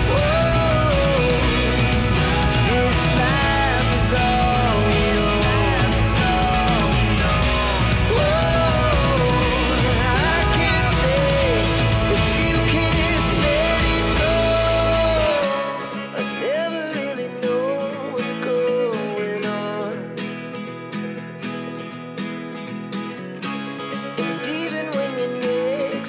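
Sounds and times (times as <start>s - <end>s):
loud bass part: 0.0s - 15.3s
guitar background music: 0.0s - 26.0s.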